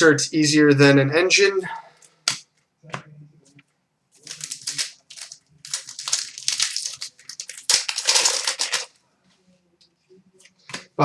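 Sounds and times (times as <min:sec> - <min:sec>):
card pack crinkling: 0:04.2 - 0:08.9.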